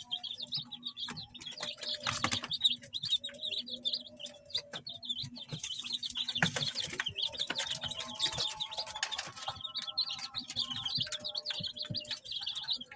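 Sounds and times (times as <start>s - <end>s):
chicks peeping: 0.0s - 12.9s
chicks rustling and pecking: 0.0s - 12.9s.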